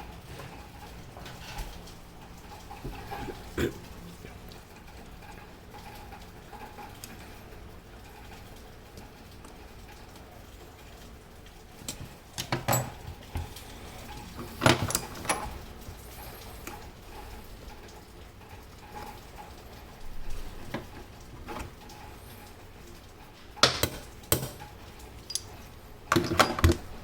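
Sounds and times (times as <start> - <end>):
handling clicks and knocks: 11.8 - 13.6, 23.6 - 25.5, 26.1 - 26.9.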